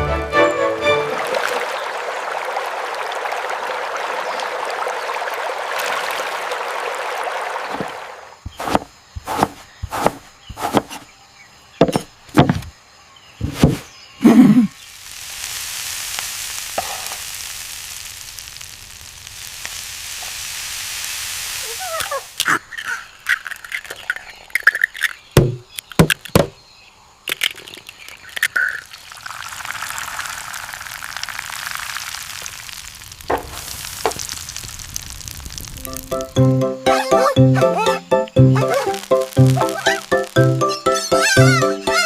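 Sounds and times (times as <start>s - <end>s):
soft high hiss: 13.9s - 22.4s
food sizzling in a frying pan: 14.8s - 22.4s, 28.8s - 36.3s, 38.7s - 41.6s.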